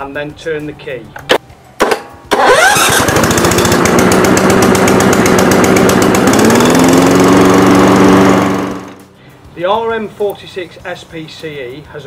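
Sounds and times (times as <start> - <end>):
lawn mower engine running: 1.8 - 9.1.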